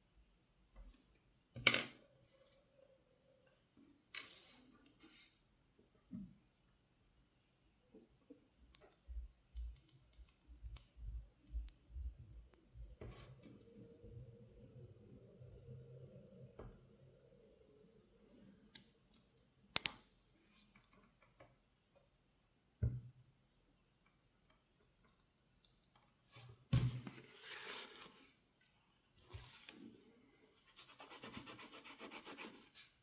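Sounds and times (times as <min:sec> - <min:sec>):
plastic clicks and snaps: 0:18.7 - 0:20.1
small ticks: 0:24.9 - 0:26.1.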